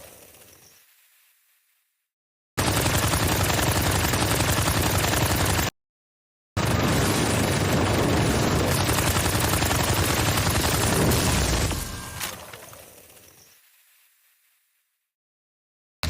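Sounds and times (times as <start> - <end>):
rapid gunfire-like impacts: 2.6 - 5.7, 6.6 - 12.3.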